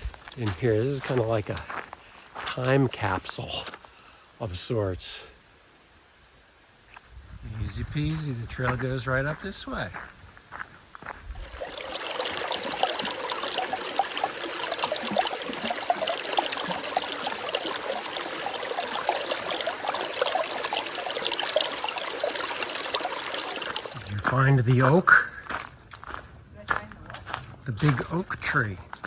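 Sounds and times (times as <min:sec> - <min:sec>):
stream babbling: 0:11.4 - 0:25.6.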